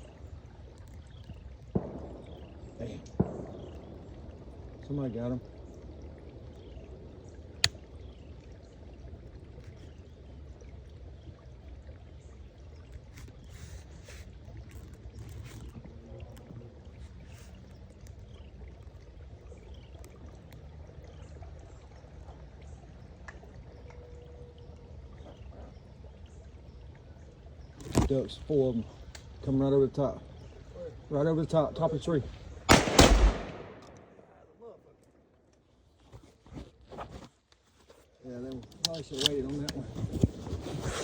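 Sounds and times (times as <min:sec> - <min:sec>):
sharp crack: 0:32.7 - 0:34.6.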